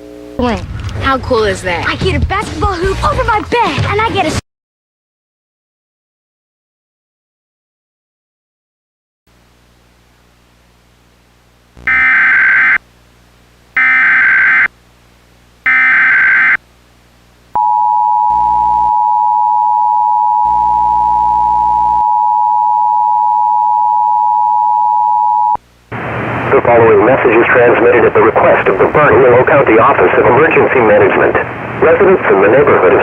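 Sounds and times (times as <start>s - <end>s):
warbling data bursts: 11.8s - 12.8s, 13.8s - 14.7s, 15.7s - 16.6s
two-tone attention signal: 11.9s - 12.8s, 13.8s - 14.7s, 15.7s - 16.6s, 17.6s - 25.6s.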